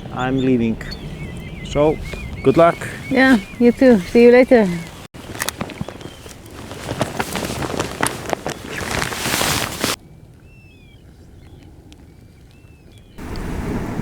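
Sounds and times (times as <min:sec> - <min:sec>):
shorebirds whistling calls: 0:00.0 - 0:13.6
wind noise: 0:00.0 - 0:14.0
footsteps crunching on stones: 0:01.9 - 0:10.0.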